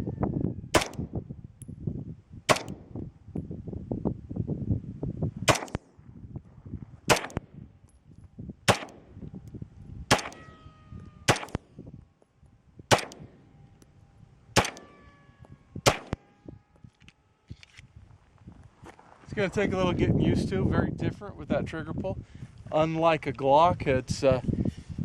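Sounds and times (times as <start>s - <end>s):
pistol shots: 0.7s - 1.1s, 2.5s - 2.9s, 5.5s - 5.9s, 7.1s - 7.5s, 8.6s - 9.2s, 10.1s - 11.8s, 12.9s - 13.5s, 14.6s - 16.3s
metallic ring: 9.7s - 12.6s.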